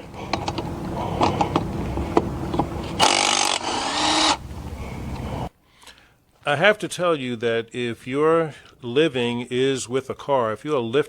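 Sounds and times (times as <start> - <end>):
impact wrench running: 0.0 - 5.4.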